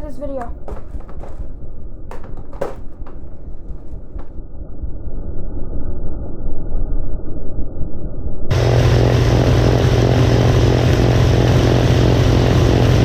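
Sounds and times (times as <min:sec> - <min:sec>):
sharp knocks: 0:00.4 - 0:04.4
muffled snowblower engine rumble: 0:08.5 - 0:13.0.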